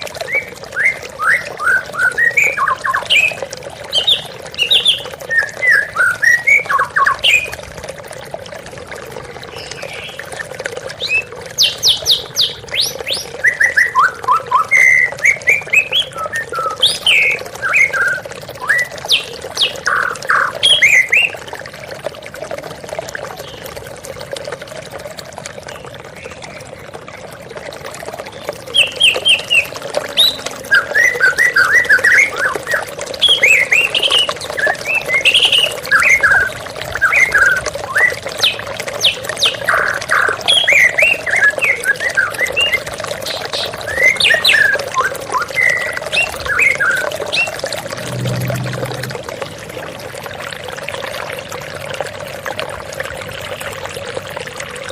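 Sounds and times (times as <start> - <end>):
songbird singing whistled phrases: 0.2 - 3.4, 4.0 - 7.5, 11.0 - 21.3, 28.7 - 47.6
waterfall rushing: 46.6 - 50.2.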